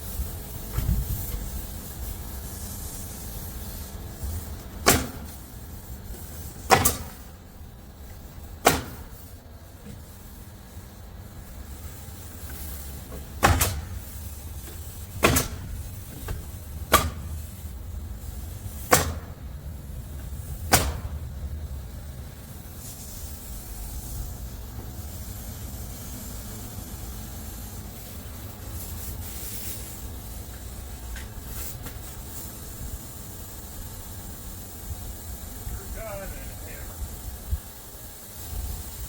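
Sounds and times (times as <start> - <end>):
sharp knocks: 4.8 - 5.3, 6.7 - 7.2, 8.6 - 9.1, 13.1 - 13.9, 15.2 - 15.7, 16.3 - 17.2, 18.9 - 19.3, 20.7 - 21.1.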